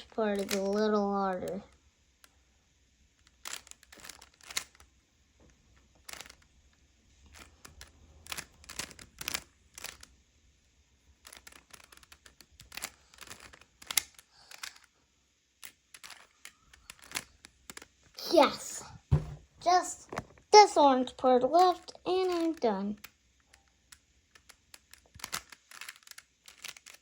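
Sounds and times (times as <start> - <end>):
plastic puzzle cube clicking: 0.4 - 0.8, 3.2 - 4.9, 6.0 - 6.5, 7.3 - 10.2, 11.2 - 14.9, 15.6 - 18.0, 21.6 - 27.0.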